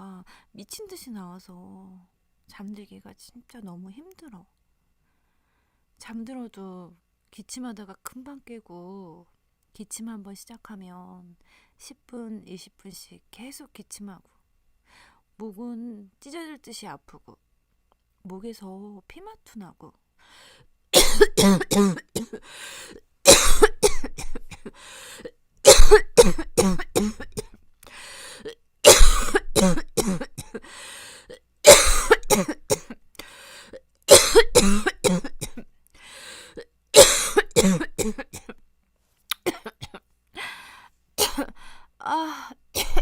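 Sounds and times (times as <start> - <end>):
woman coughing hard: 21.0 - 22.4, 23.3 - 24.8, 25.7 - 27.6, 28.8 - 30.6, 31.7 - 33.0, 34.1 - 35.6, 37.0 - 38.5, 39.4 - 40.0, 41.2 - 41.7, 42.8 - 43.0.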